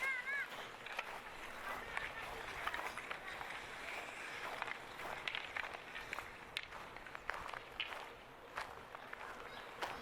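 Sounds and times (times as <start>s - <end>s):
footsteps of person walking: 0.0s - 10.0s.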